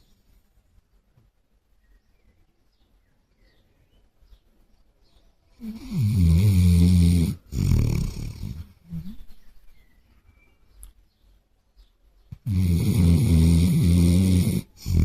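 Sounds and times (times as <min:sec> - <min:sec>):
dog snoring: 0:05.6 - 0:09.1, 0:12.4 - 0:15.0.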